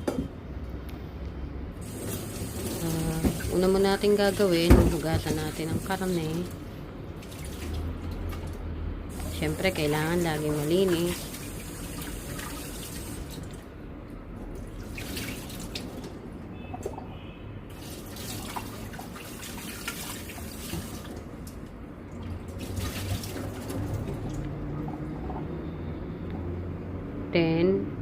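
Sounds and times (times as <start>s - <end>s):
water splashing on meat: 1.8s - 13.7s, 14.5s - 16.2s, 17.7s - 25.5s
tap running into sink: 1.9s - 3.6s, 4.6s - 6.0s.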